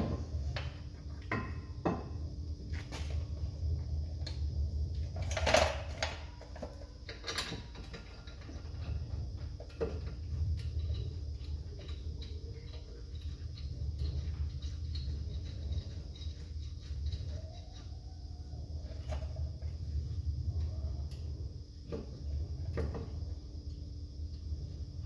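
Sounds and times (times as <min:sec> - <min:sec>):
steady low rumble: 0:02.2 - 0:05.3
tools and parts clicking: 0:05.1 - 0:20.1.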